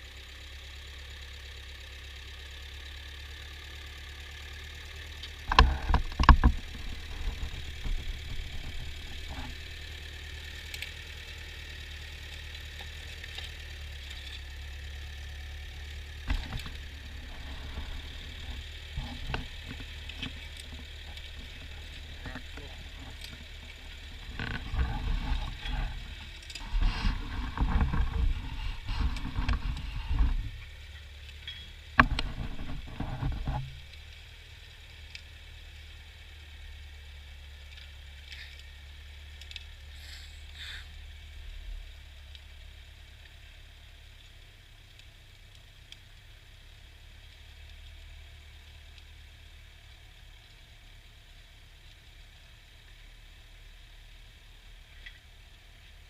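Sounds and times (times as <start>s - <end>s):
tractor engine droning: 0.0s - 52.2s
loud irregular clattering: 5.5s - 10.0s.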